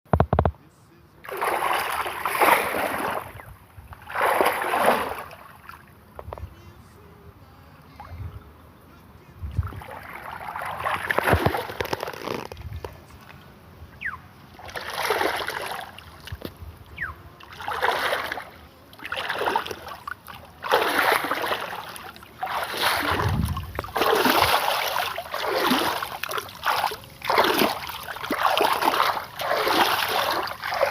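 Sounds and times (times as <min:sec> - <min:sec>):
water splashing and sloshing: 0:01.2 - 0:06.3, 0:09.5 - 0:30.9.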